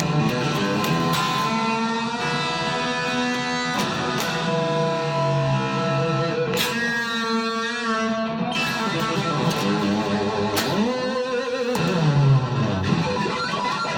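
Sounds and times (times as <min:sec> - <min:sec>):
electric guitar solo: 0:00.0 - 0:13.9.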